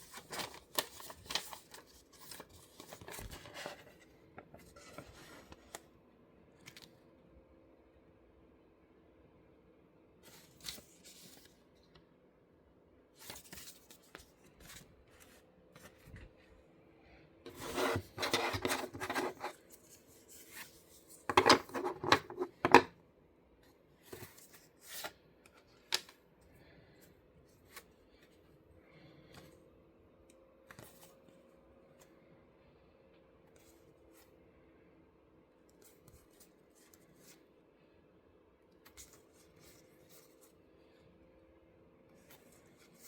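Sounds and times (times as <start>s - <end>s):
packaging rustling and scraping: 17.5s - 22.9s.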